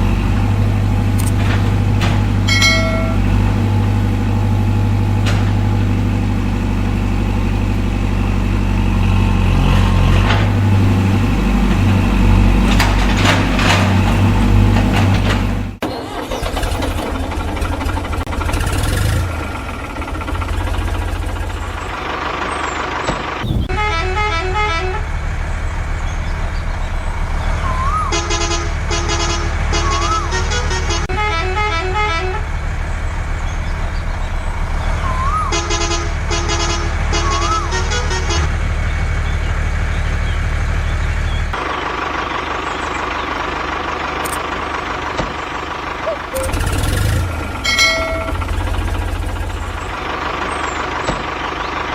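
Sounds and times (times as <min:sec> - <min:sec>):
low truck engine drone: 0:00.0 - 0:51.9
rough engine noise: 0:00.0 - 0:51.9
electronic horn tones: 0:02.5 - 0:03.4.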